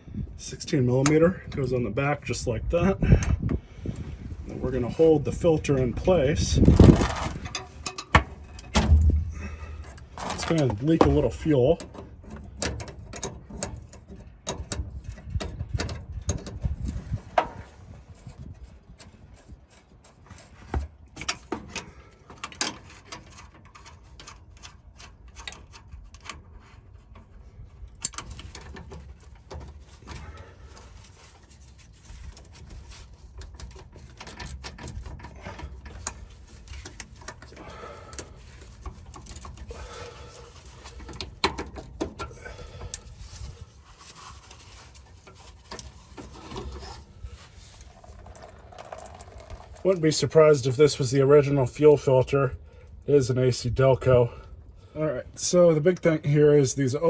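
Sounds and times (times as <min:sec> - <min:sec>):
wrenches clicking on metal fittings: 0:47.8 - 0:50.2.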